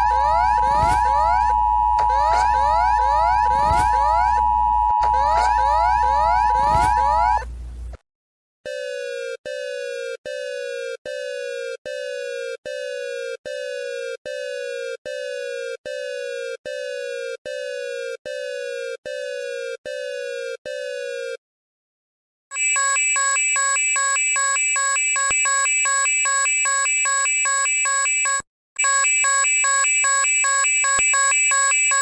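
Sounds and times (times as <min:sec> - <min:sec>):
electronic alarm beeps: 0:00.0 - 0:07.4, 0:22.5 - 0:32.0.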